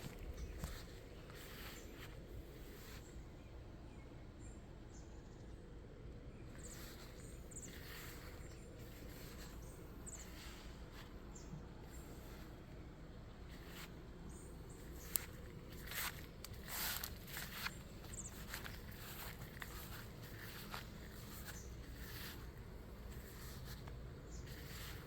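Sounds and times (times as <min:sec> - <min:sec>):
footsteps: 0:00.0 - 0:02.2, 0:14.8 - 0:25.0
rustling: 0:13.4 - 0:25.0.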